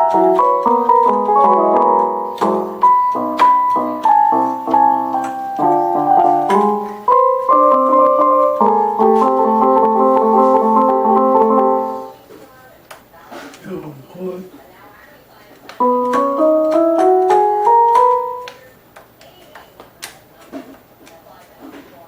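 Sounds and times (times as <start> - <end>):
electronic keyboard piano melody: 0.0 - 12.2, 15.8 - 18.6.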